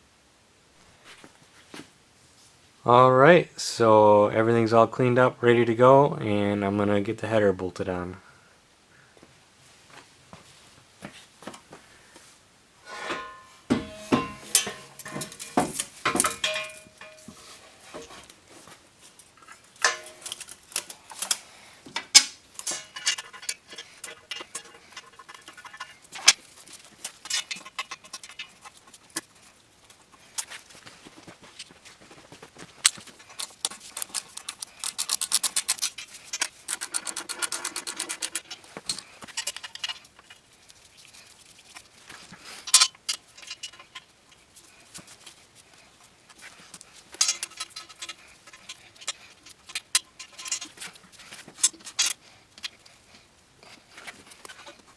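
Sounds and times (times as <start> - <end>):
metal hand tools clinking: 12.9 - 18.2, 19.2 - 28.8, 47.1 - 50.9
ratchet clicking: 33.4 - 38.4.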